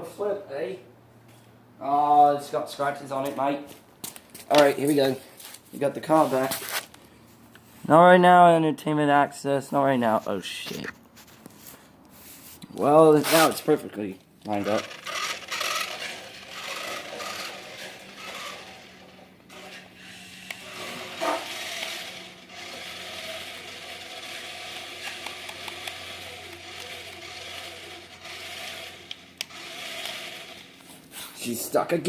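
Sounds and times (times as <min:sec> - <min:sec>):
toy car scraping across boxes: 0:13.1 - 0:13.8, 0:14.5 - 0:31.7
toy car motor whirring: 0:14.5 - 0:31.1.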